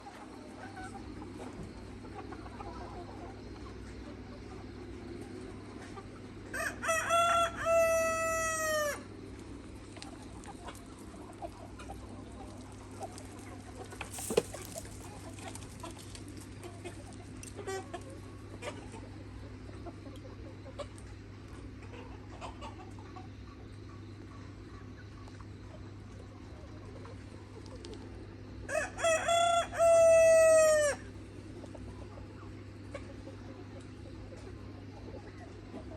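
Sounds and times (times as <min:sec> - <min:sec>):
hens clucking quietly: 0:00.0 - 0:35.9
rooster crowing: 0:06.5 - 0:09.1, 0:28.7 - 0:31.1.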